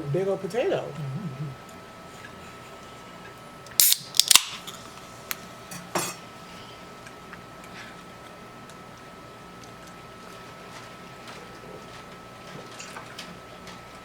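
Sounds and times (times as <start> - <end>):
sharp snaps and clicks: 3.7 - 4.7.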